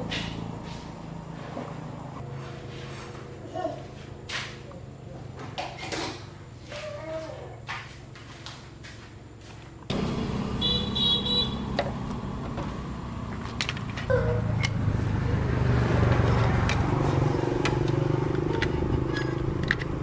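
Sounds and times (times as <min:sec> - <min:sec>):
engine humming: 0:09.8 - 0:20.0.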